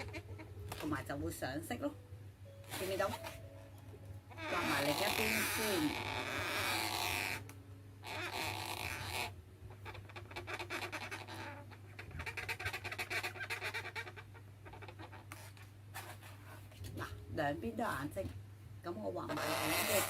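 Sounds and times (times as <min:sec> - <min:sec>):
balloon squeaking under marker pen: 0:00.0 - 0:00.9, 0:02.7 - 0:03.5, 0:04.3 - 0:17.2, 0:19.3 - 0:20.0.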